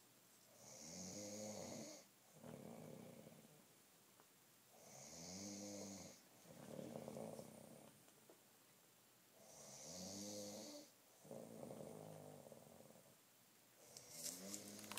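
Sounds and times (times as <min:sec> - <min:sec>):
man snoring: 0:00.6 - 0:03.6, 0:04.8 - 0:07.9, 0:09.4 - 0:13.1.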